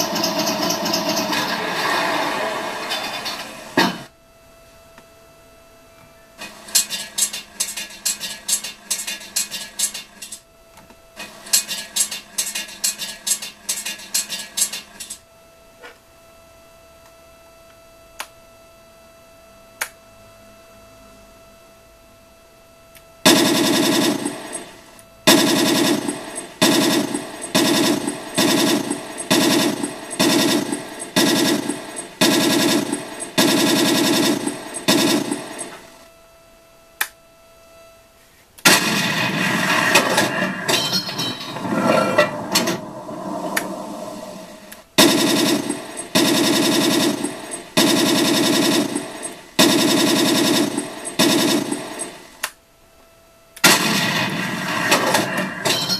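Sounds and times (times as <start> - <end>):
click: 17.0 - 18.4, 19.8 - 20.0, 37.0 - 37.2, 52.4 - 52.6
simulated machine-gun fire: 23.2 - 36.0, 38.6 - 41.9, 44.9 - 52.4, 53.6 - 55.9.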